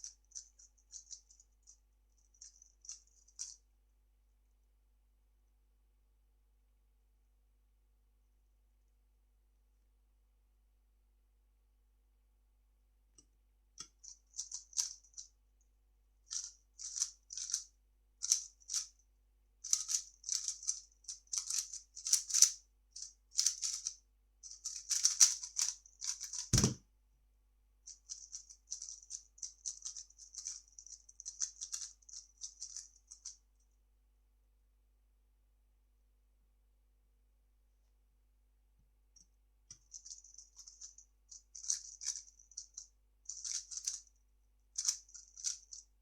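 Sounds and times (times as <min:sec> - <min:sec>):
puzzle cube clicking and rattling: 0:13.9 - 0:15.3, 0:16.3 - 0:19.0, 0:19.6 - 0:26.8, 0:27.9 - 0:33.4, 0:39.8 - 0:44.1, 0:44.8 - 0:45.9
sharp thump: 0:26.6 - 0:26.8.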